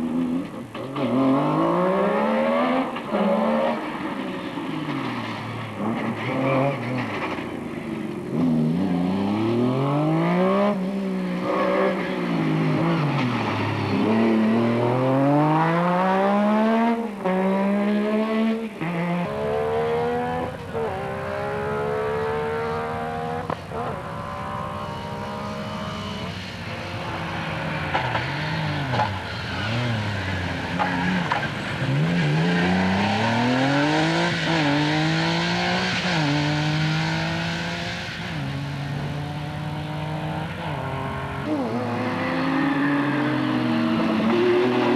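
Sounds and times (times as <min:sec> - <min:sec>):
rally car engine accelerating: 0:00.0 - 0:44.9.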